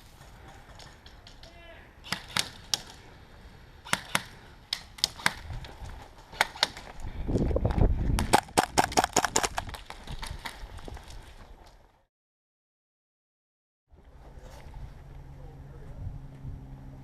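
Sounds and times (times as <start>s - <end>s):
airsoft gunshots: 2.0s - 2.9s, 3.8s - 5.5s.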